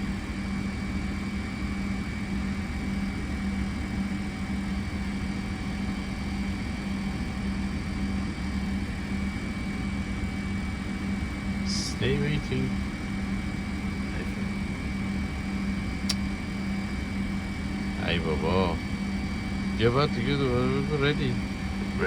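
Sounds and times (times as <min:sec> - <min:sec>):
jet engines idling: 0:00.0 - 0:22.0
thin high whine: 0:11.6 - 0:12.8.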